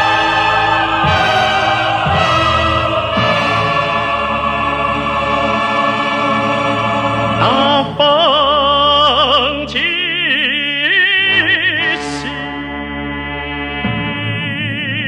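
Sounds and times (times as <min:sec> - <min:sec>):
held accompaniment chords: 0:00.0 - 0:09.0
person singing operatically: 0:07.1 - 0:12.6, 0:14.1 - 0:15.0.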